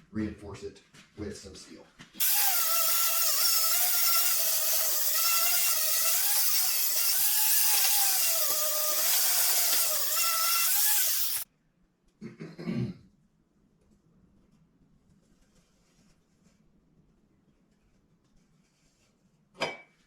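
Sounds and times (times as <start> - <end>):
power tool whining: 2.2 - 11.4.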